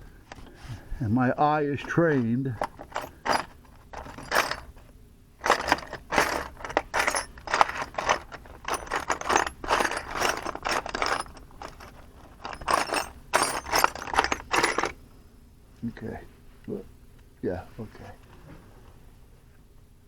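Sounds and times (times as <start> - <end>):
metal drill bits clinking: 1.8 - 4.8, 5.4 - 15.0.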